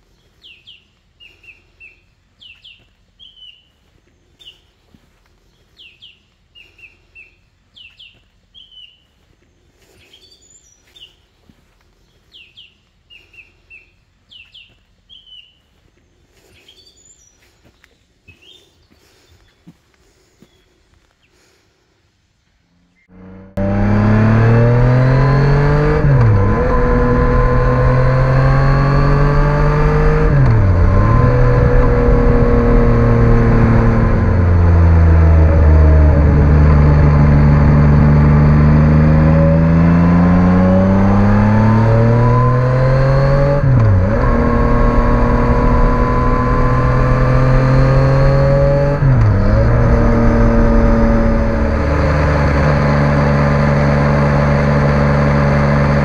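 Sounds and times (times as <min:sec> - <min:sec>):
motorcycle engine accelerating: 0:22.9 - 0:56.0.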